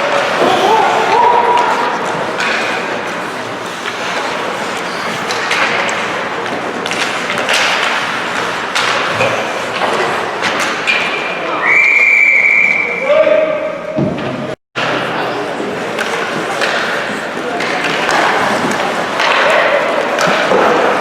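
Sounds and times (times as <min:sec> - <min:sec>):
crowd background: 0:00.0 - 0:21.0
hockey puck and stick knocks: 0:01.4 - 0:11.2, 0:15.9 - 0:21.0
long whistle blowing: 0:11.6 - 0:13.1.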